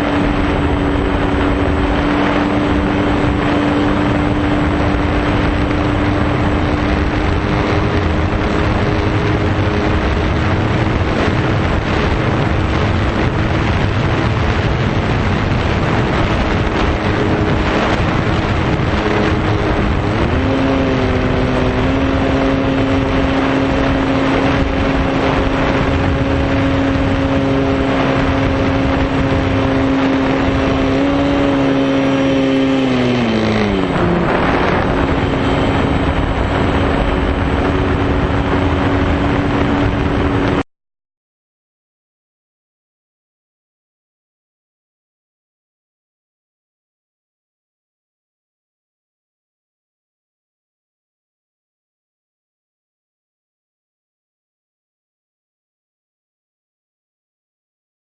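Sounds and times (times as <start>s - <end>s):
wind rushing over microphone: 0.0s - 40.7s.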